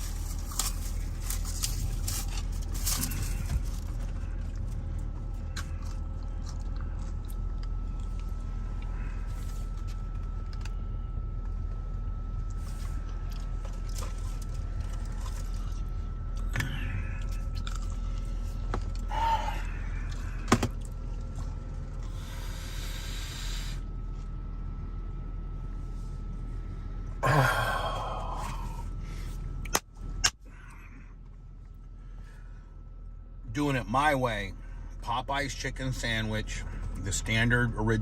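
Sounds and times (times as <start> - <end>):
person eating a sandwich: 0.0 - 24.3, 27.2 - 32.4
steady low hum: 0.0 - 38.0.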